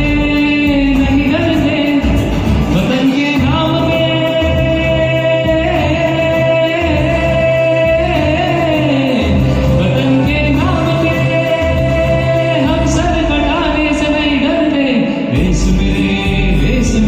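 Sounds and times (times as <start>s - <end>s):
backing track with pulsing bass: 0.0s - 17.0s
person singing long notes: 0.0s - 17.0s.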